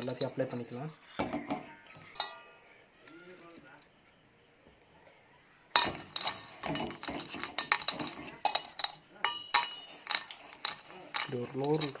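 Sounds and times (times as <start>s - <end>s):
utensils clinking against bowl: 0.0s - 2.6s, 5.8s - 12.0s.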